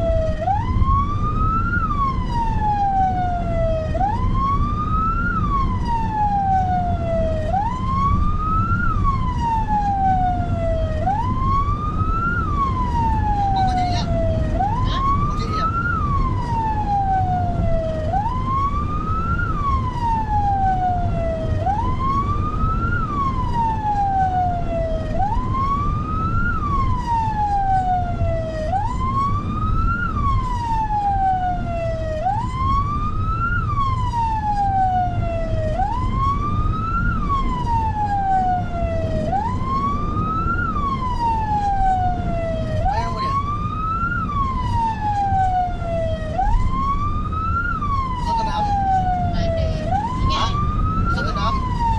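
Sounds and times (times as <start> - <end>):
engine and road noise rumble: 0.0 - 51.9
siren wailing: 0.0 - 51.9.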